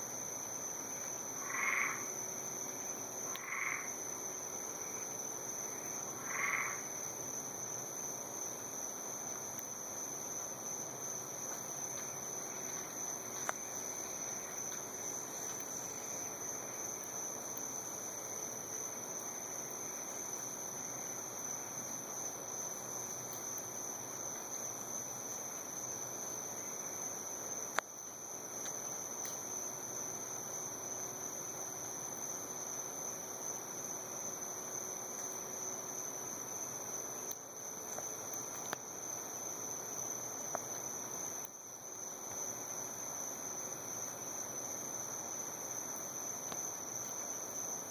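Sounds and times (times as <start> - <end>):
crickets and insects chirping: 0.0 - 47.9
high even insect trill: 0.6 - 9.2.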